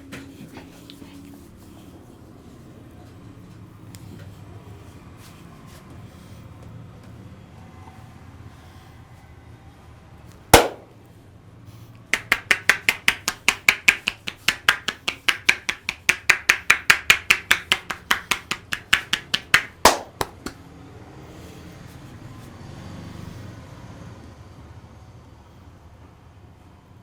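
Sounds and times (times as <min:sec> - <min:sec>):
hands slapping body: 0:10.6 - 0:10.9, 0:12.2 - 0:20.6.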